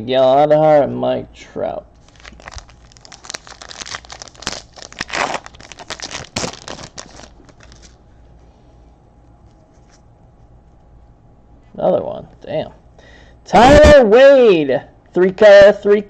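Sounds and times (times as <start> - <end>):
plastic wrapper tearing and crinkling: 2.0 - 8.0.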